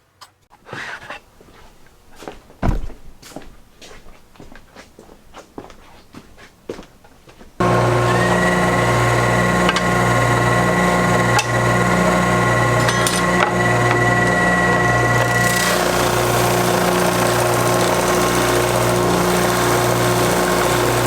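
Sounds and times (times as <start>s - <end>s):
cnc router whining and humming: 7.6s - 21.0s.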